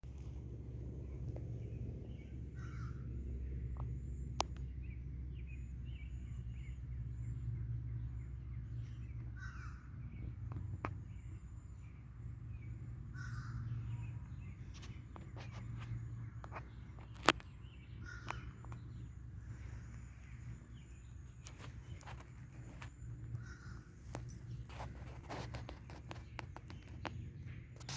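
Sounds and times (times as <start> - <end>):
low steady rumble: 0.0 - 27.9
birds cawing: 2.1 - 3.2, 9.3 - 10.0, 13.1 - 14.1, 17.9 - 20.9, 21.5 - 24.4.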